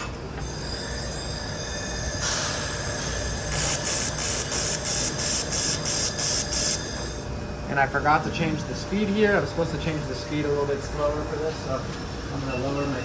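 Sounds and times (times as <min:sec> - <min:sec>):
laser welder pulse hisses: 0:01.7 - 0:07.2.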